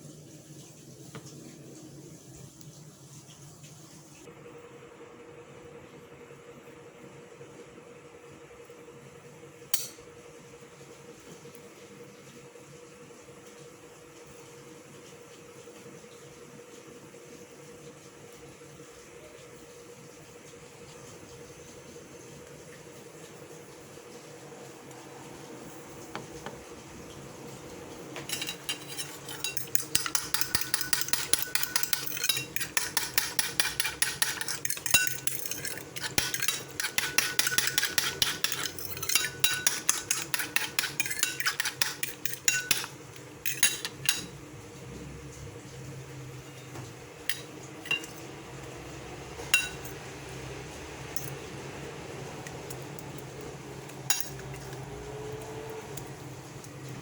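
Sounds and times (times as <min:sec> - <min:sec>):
fork beating eggs in bowl: 0:28.2 - 0:44.3.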